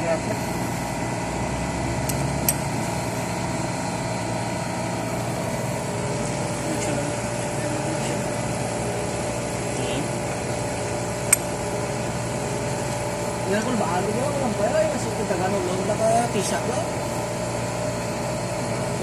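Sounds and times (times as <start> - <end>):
refrigeration compressor humming: 0.0 - 19.0
whining tones: 0.0 - 19.0
sharp click: 11.3 - 11.5.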